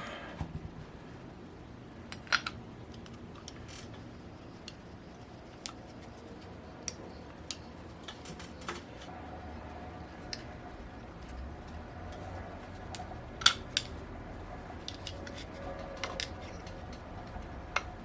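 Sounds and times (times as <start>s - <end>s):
metallic clicks of small parts and tools: 6.8s - 8.8s, 14.8s - 17.1s.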